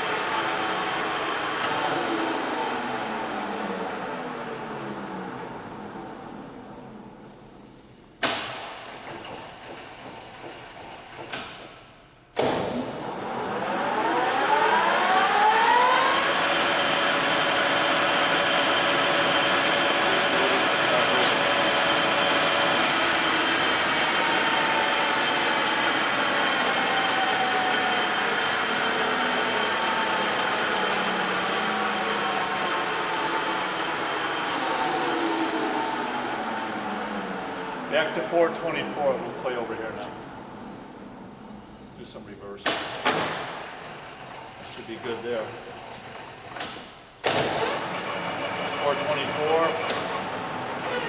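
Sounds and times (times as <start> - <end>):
lathe spindle whine: 13.2 - 41.7.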